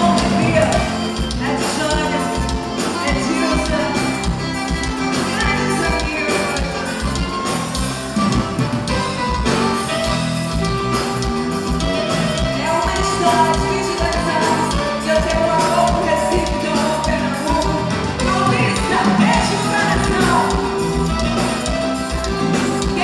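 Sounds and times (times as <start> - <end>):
live band music: 0.0 - 23.0
person singing: 12.4 - 23.0.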